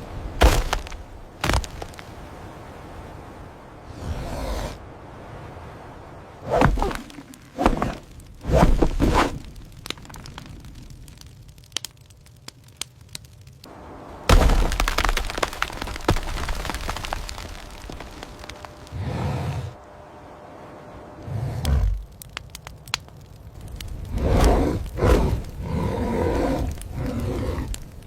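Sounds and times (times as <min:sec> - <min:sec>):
crackling: 0:00.0 - 0:03.1, 0:06.4 - 0:28.0
heavy cracks: 0:00.3 - 0:02.2, 0:06.5 - 0:13.7, 0:14.3 - 0:19.0, 0:21.6 - 0:28.0.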